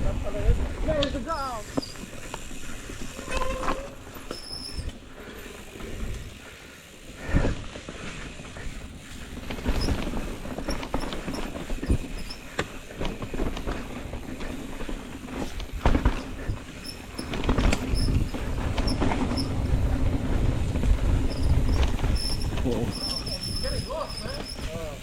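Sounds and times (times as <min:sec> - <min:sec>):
bike rattling and knocking: 0:00.0 - 0:25.0
tyres rolling over dirt and rocks: 0:00.0 - 0:25.0
brief squeal: 0:03.2 - 0:04.9.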